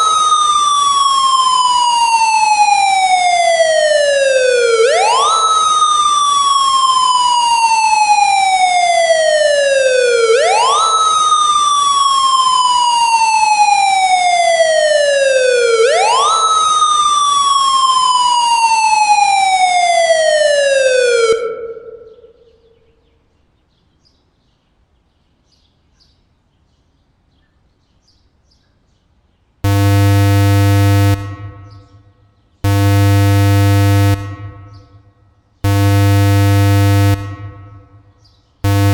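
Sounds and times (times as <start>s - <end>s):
rising and falling warning siren: 0.0s - 22.3s, 29.6s - 38.9s
harsh buzzy emergency tone: 29.6s - 32.0s, 32.6s - 35.0s, 35.6s - 38.9s.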